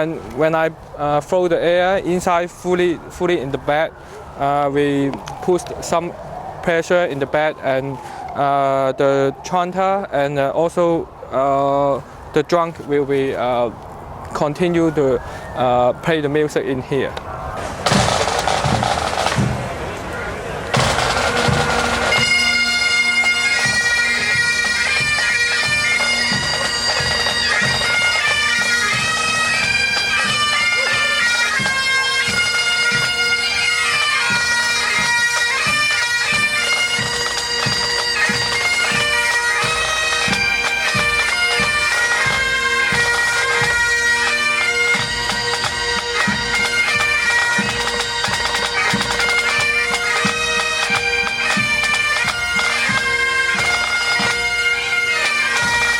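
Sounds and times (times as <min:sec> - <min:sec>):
drum beats: 0:17.6 - 0:19.9, 0:20.7 - 0:33.4, 0:44.6 - 0:54.6
bagpipe playing: 0:20.7 - 0:55.9.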